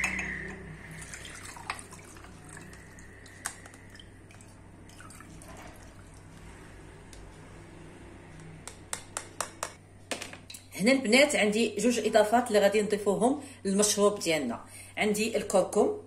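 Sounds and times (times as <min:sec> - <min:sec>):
liquid trickling into a cup: 0:00.9 - 0:06.4.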